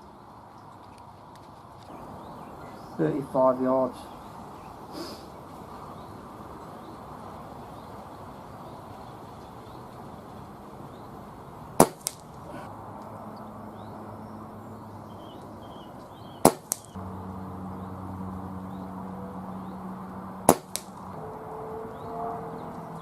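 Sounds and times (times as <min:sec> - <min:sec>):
air rifle shots: 0:11.8 - 0:12.4, 0:16.4 - 0:17.0, 0:20.5 - 0:21.0.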